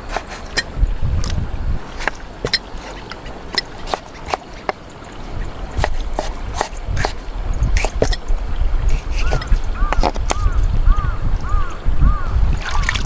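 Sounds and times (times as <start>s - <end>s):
water trickling and splashing: 0.0s - 13.0s
water drips and plops: 12.5s - 13.0s.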